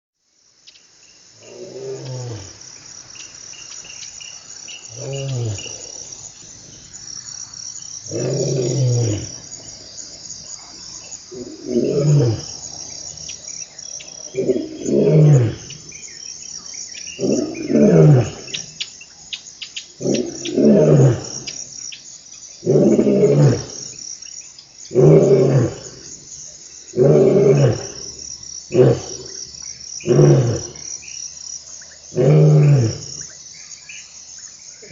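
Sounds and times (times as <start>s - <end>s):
insects chorus: 0.2s - 34.9s
lion roaring: 1.4s - 2.6s, 4.9s - 6.0s, 8.1s - 9.6s, 11.3s - 12.6s, 14.3s - 15.8s, 17.2s - 18.5s, 20.0s - 21.5s, 22.6s - 23.9s, 24.9s - 26.1s, 26.9s - 28.1s, 28.7s - 29.4s, 30.0s - 30.8s, 32.1s - 33.2s.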